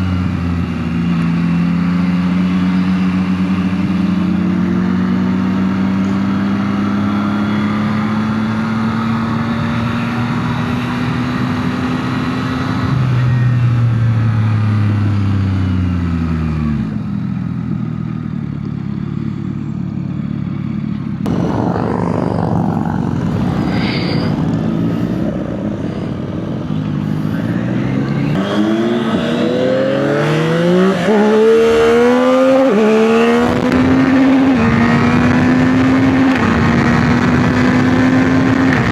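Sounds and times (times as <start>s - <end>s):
motorcycle engine revving: 15.8s - 38.9s.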